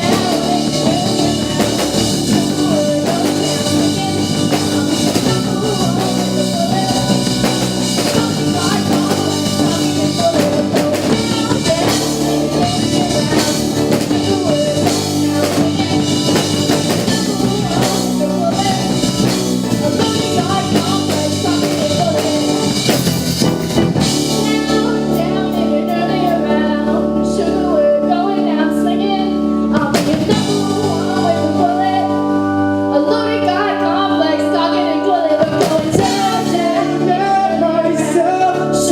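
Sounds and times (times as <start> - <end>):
drum hits: 0.0 - 24.9
live rock band playing: 0.0 - 38.9
person singing: 0.0 - 38.9.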